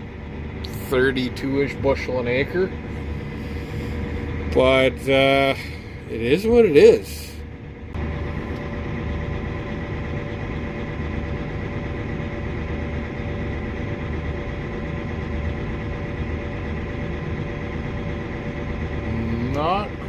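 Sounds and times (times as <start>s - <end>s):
truck engine rumbling: 0.0s - 20.0s.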